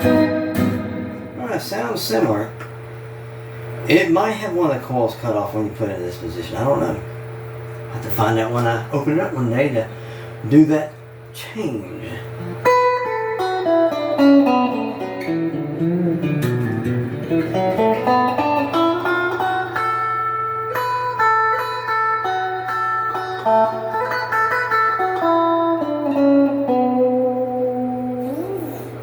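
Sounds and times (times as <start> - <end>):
electric guitar melody: 0.0 - 3.1, 12.4 - 29.0
steady low hum: 0.0 - 29.0.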